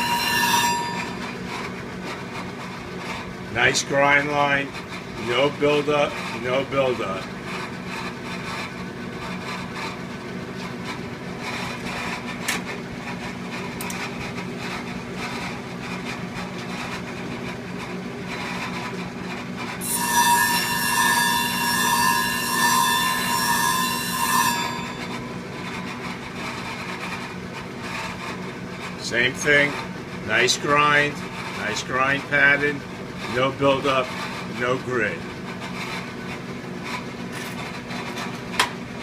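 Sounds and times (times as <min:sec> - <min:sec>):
sharpening grinder humming: 0:00.0 - 0:04.7, 0:19.8 - 0:27.3
blade grinding with scraping ring: 0:00.0 - 0:10.0, 0:10.6 - 0:12.4, 0:19.6 - 0:36.2.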